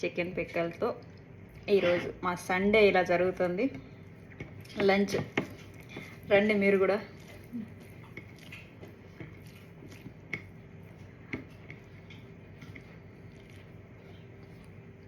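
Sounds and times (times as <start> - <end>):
faint steady hum: 0.0 - 15.0
food being chewed: 3.8 - 6.3, 7.0 - 15.0.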